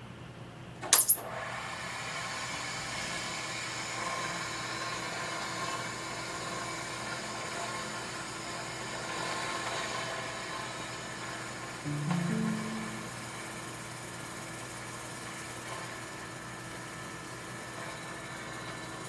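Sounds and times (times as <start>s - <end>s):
faint hum: 11.9s - 13.9s.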